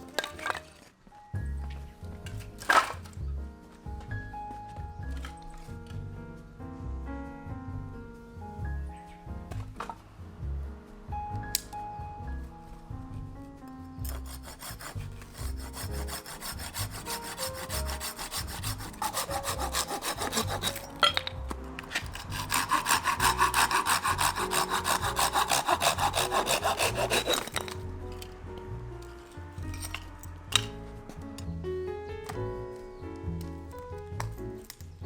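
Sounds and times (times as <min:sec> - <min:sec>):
background music: 0:00.0 - 0:35.0
scraping strokes on wood: 0:14.0 - 0:28.3.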